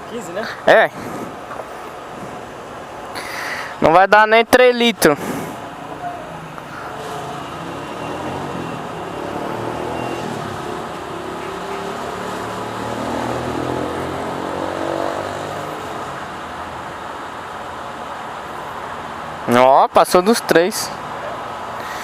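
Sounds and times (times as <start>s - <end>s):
vehicle engine running and accelerating: 5.6s - 19.3s.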